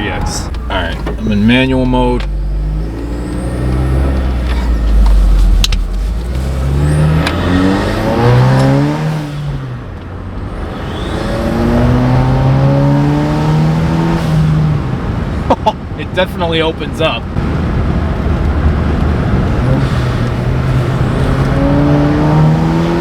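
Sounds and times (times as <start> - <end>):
car engine accelerating: 0.0 - 15.5, 17.2 - 23.0.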